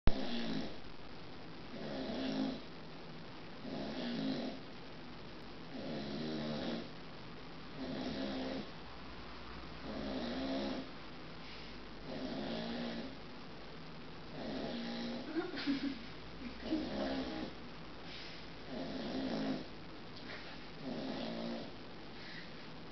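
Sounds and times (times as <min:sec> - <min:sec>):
puppy snoring: 0:00.1 - 0:00.8, 0:01.7 - 0:02.7, 0:03.6 - 0:04.6, 0:05.7 - 0:06.9, 0:07.7 - 0:08.7, 0:09.8 - 0:13.2, 0:14.3 - 0:15.4, 0:16.6 - 0:19.7, 0:20.3 - 0:22.5
quiet breaths: 0:07.7 - 0:13.2, 0:16.0 - 0:22.9.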